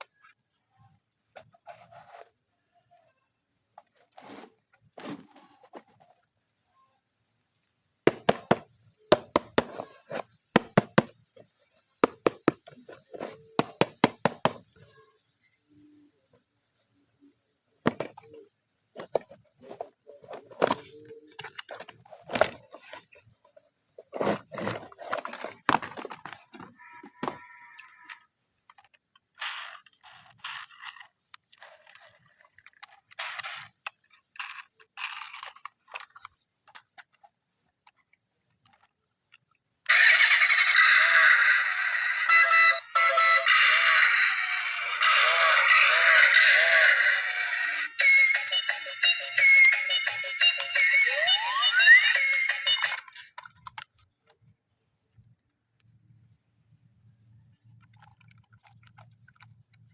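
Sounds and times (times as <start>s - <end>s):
scattered knocks: 8.1s - 9.9s, 10.6s - 11.1s, 12.0s - 14.6s
plastic toys clicking and clacking: 8.1s - 11.2s, 12.0s - 14.9s, 17.9s - 18.4s, 19.0s - 38.0s, 38.6s - 54.4s, 57.7s - 59.9s.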